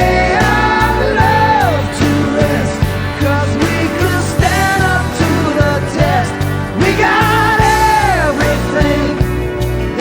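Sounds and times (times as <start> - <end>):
rock ballad music: 0.0 - 10.0.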